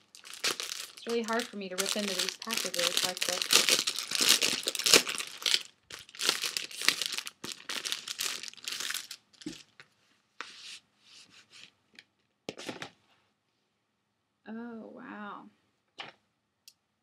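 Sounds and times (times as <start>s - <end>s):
cardboard tearing and crinkling: 0.0s - 9.6s.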